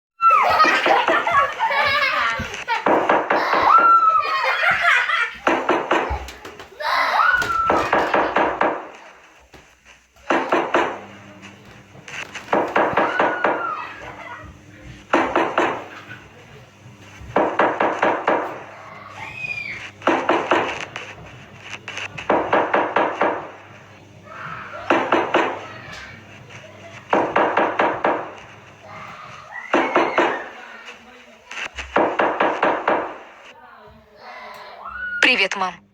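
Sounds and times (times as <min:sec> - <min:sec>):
rapid knocking bursts: 0:00.4 - 0:06.8, 0:07.4 - 0:09.4, 0:12.1 - 0:14.2, 0:17.3 - 0:18.7, 0:20.0 - 0:23.7, 0:24.8 - 0:25.8, 0:27.0 - 0:29.0, 0:31.5 - 0:33.5.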